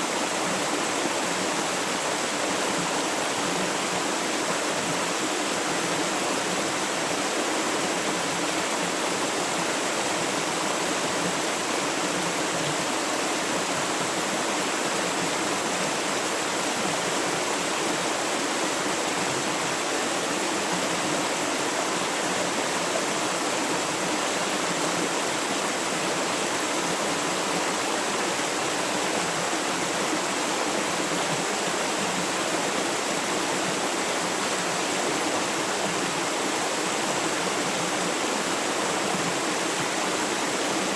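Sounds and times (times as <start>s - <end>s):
river water rushing: 0.0s - 40.9s.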